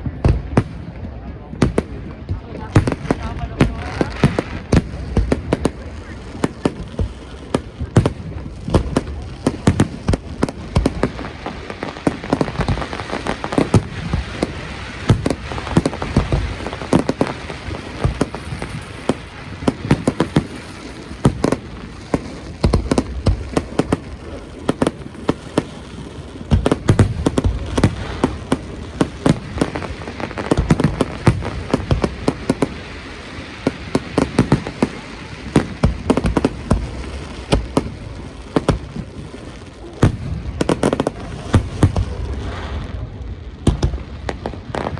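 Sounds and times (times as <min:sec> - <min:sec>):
fireworks bangs and crackling: 0:00.0 - 0:44.9.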